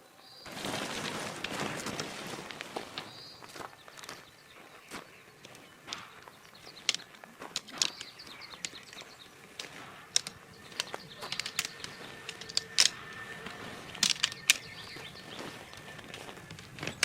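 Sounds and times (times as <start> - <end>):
faint steady tone: 3.3 - 17.0
sharp taps and clicks: 5.4 - 17.0.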